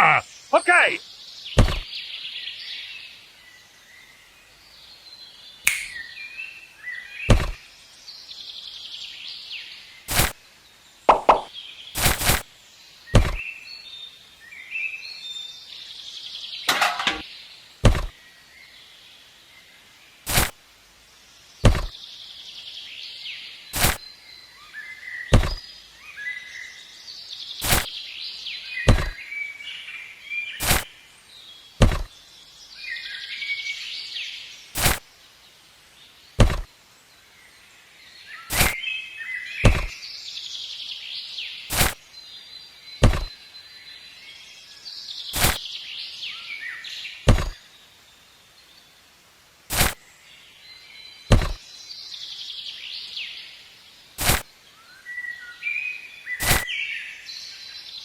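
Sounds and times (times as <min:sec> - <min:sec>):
birds chirping: 0:00.0 - 0:49.1, 0:49.7 - 0:58.0
sharp knocks: 0:01.6 - 0:01.8, 0:07.3 - 0:07.6, 0:11.1 - 0:11.5, 0:13.2 - 0:13.4, 0:17.8 - 0:18.1, 0:21.6 - 0:21.9, 0:25.3 - 0:25.6, 0:28.9 - 0:29.2, 0:31.8 - 0:32.1, 0:36.4 - 0:36.7, 0:39.6 - 0:39.9, 0:43.0 - 0:43.3, 0:47.3 - 0:47.6, 0:51.3 - 0:51.6.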